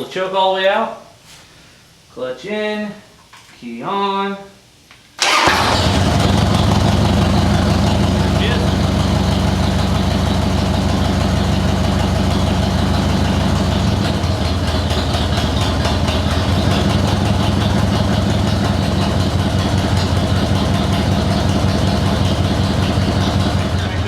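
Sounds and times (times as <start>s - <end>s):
motorcycle engine idling: 5.3s - 24.0s.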